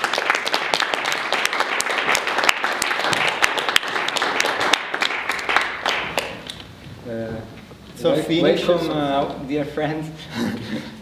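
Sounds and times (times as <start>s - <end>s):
audience applauding: 0.0s - 6.7s.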